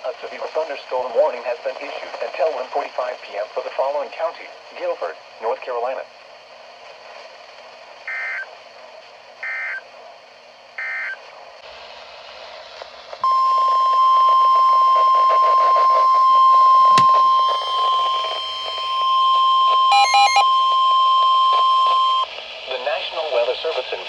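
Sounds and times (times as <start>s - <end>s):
faint radio hiss: 0.0s - 24.0s
steady warning alarm tone: 13.2s - 22.2s
warbling alert data bursts: 17.3s - 22.2s.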